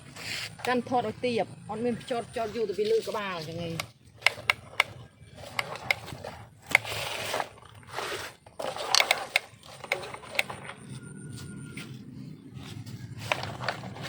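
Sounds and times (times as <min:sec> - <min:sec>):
plastic toy rattling scrapes: 0:00.0 - 0:01.2, 0:02.0 - 0:14.0
plastic toy clicks and knocks: 0:02.8 - 0:07.8, 0:08.5 - 0:11.0, 0:13.2 - 0:14.0.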